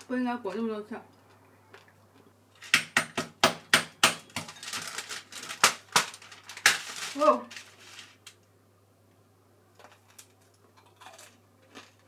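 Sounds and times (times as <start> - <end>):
sugar coating cracking: 2.6 - 8.4.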